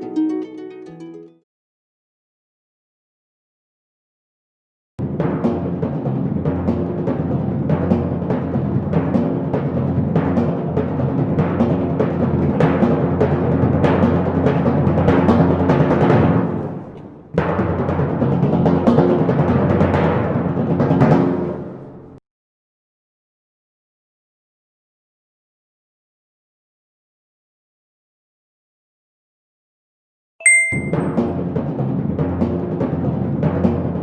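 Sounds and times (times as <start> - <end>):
low-pitched instrumental music: 0.0 - 1.4.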